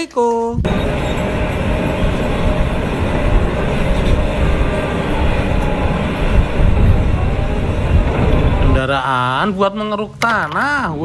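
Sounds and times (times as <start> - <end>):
heavy machinery rumble: 0.6 - 10.0.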